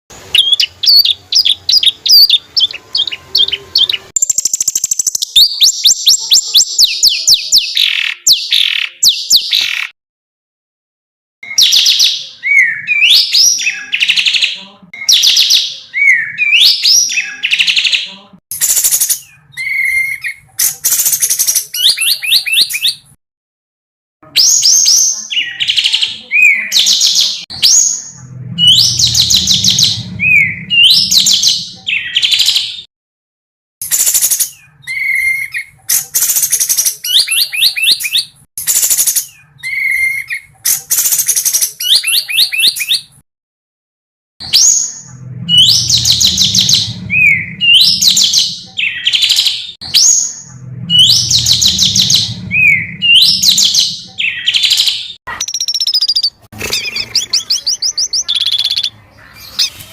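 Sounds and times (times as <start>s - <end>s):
songbird whistles and trills: 18.6s - 23.0s, 33.8s - 43.1s, 44.4s - 59.9s.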